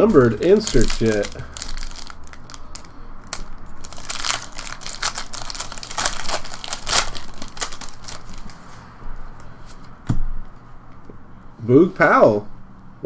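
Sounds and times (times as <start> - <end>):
foil wrappers crinkling and tearing: 0.0 - 8.8.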